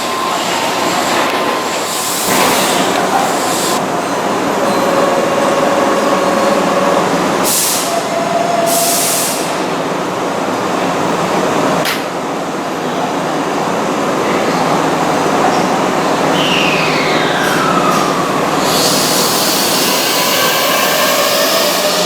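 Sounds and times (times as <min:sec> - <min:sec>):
electric train running: 0:16.8 - 0:22.0
air hisses: 0:18.6 - 0:22.0.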